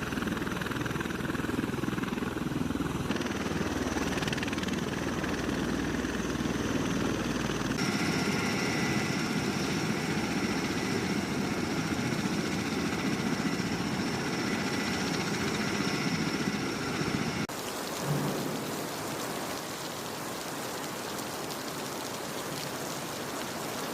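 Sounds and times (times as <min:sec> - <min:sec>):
aircraft rotors rushing: 0:00.0 - 0:17.5
turbine high whine: 0:00.0 - 0:17.5.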